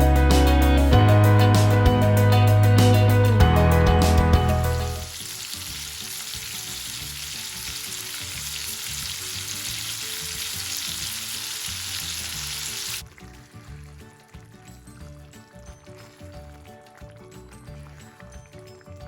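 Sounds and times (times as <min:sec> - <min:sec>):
food sizzling in hot oil: 0:04.7 - 0:13.1.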